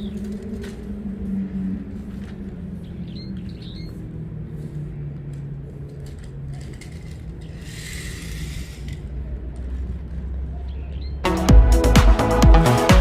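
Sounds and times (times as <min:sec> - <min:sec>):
bird chirping: 0:00.0 - 0:00.3, 0:02.7 - 0:04.1, 0:10.5 - 0:11.3.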